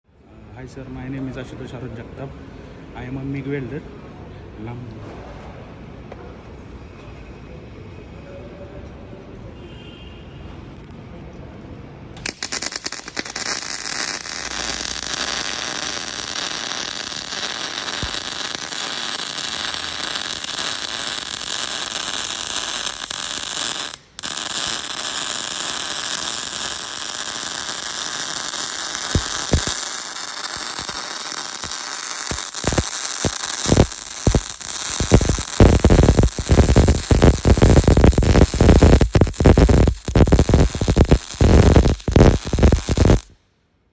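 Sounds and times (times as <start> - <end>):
welding arc crackling sizzle: 12.2 - 43.4.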